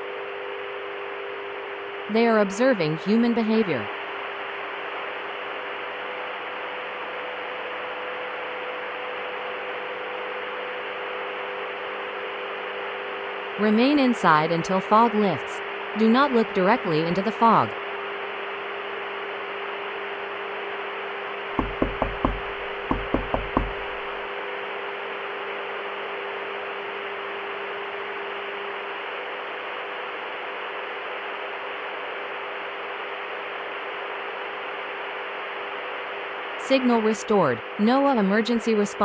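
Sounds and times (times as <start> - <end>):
low electrical hum: 0.0 - 39.0
knocking on a door: 21.6 - 24.2
static hiss: 21.6 - 24.2.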